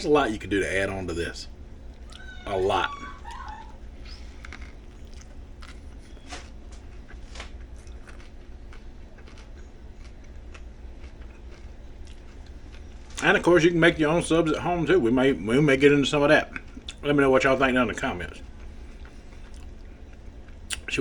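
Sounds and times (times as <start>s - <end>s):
steady low hum: 0.0s - 21.0s
man chewing sandwich: 1.8s - 13.4s, 18.3s - 20.9s.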